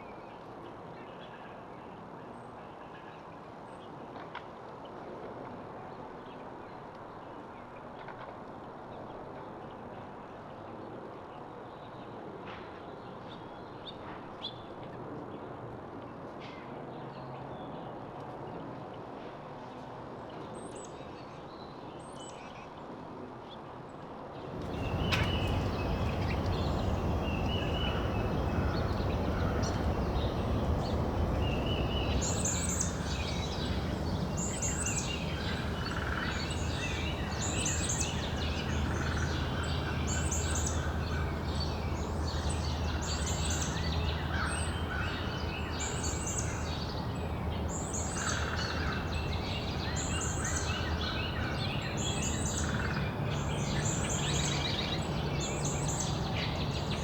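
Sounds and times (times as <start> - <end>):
low background rumble: 24.6 - 57.0
songbirds singing and chirping: 24.6 - 57.0
bird repeating high song phrase: 24.7 - 52.6.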